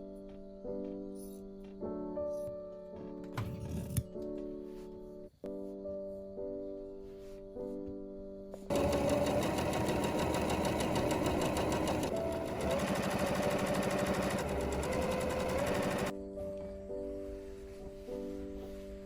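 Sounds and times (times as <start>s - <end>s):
soft piano music: 0.0s - 19.0s
small motorised appliance rattling: 8.7s - 16.1s.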